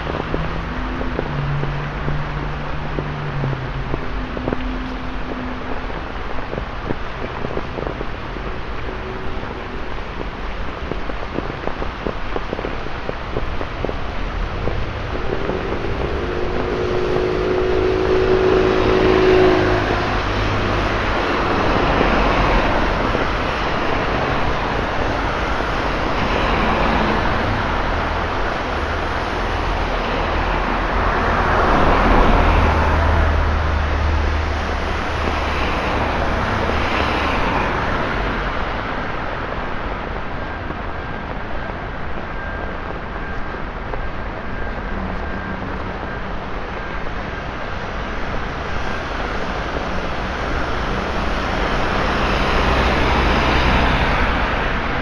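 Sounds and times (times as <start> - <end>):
low engine rumble: 0.0 - 55.0
pitched engine hum: 13.3 - 38.4.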